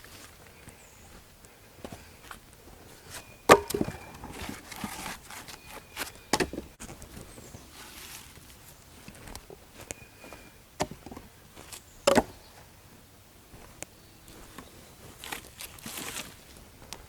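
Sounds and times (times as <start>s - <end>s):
wood pieces knocking together: 3.5s - 5.4s.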